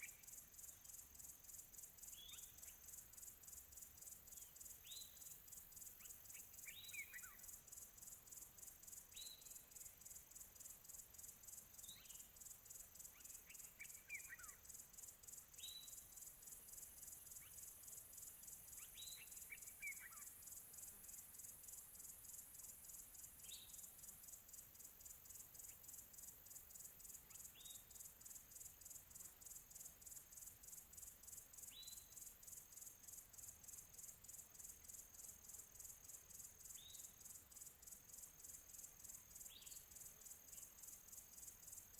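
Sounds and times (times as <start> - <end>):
high-pitched insect chorus: 0.0 - 41.9.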